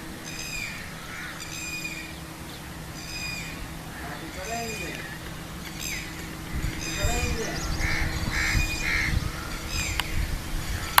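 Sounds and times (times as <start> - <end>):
low rumble: 0.0 - 11.0
faint voices: 3.6 - 9.9.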